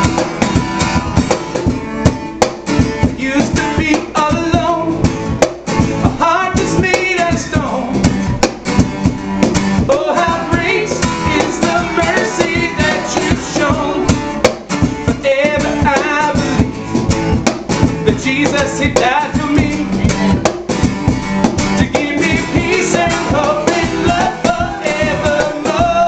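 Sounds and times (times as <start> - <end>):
cajon beating a rhythm: 0.0 - 26.0
strummed acoustic guitar: 0.0 - 26.0
person singing: 3.0 - 5.0, 6.0 - 8.1, 9.8 - 16.7, 18.0 - 20.7, 21.7 - 26.0.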